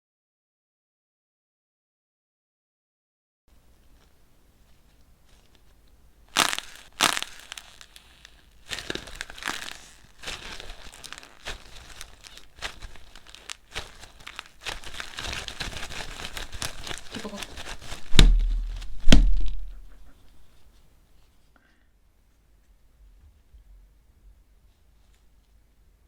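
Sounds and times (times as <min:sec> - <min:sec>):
dried clay crunching and cracking: 0:05.3 - 0:20.1.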